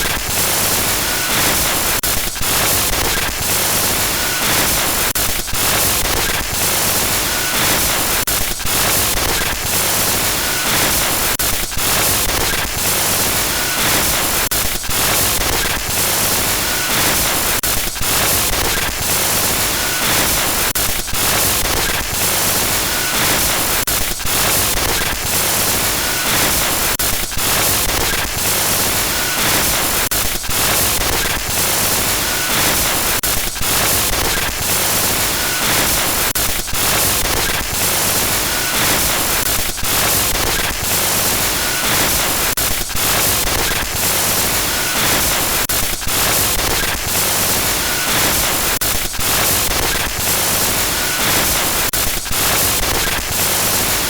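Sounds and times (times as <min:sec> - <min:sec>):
harsh glitch static hiss: 0:00.0 - 0:54.0.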